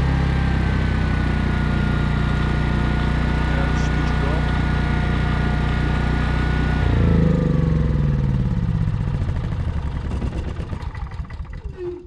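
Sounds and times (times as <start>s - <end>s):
generator engine winding down: 0.0s - 12.0s.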